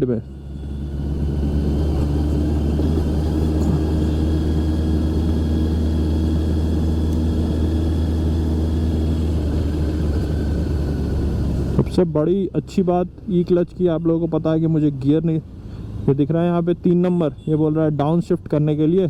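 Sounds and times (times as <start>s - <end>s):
motorcycle engine humming: 0.0s - 19.0s
road and wind noise: 0.0s - 19.0s.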